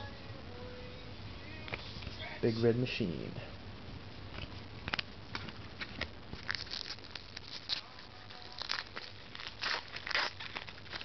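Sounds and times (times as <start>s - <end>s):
trading cards rustling and sliding: 4.3s - 11.0s.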